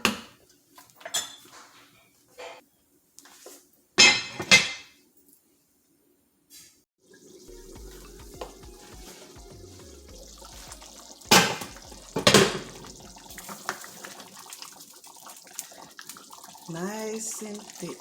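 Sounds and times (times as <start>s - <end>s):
metal clanks against pot: 4.0s - 4.9s
stew bubbling in a pot: 7.0s - 18.0s.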